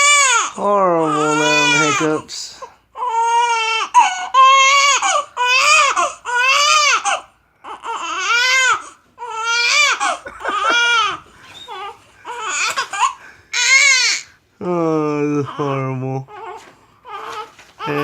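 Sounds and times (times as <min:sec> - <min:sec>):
girl crying and wailing: 0:09.5 - 0:14.2.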